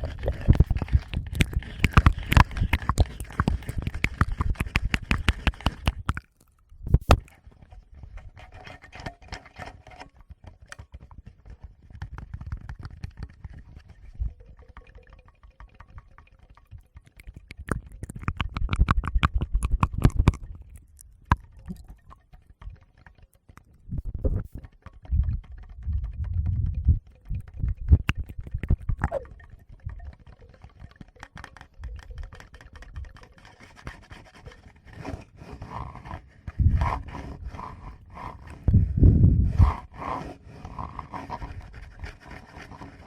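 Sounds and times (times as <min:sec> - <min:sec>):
fingers tapping on microphones: 0:00.2 - 0:06.3, 0:17.1 - 0:20.5, 0:23.6 - 0:30.1.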